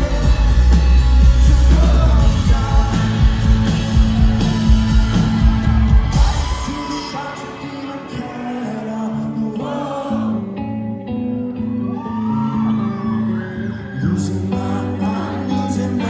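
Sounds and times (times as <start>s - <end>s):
live rock band: 0.0s - 12.3s
lead vocals: 0.0s - 16.0s.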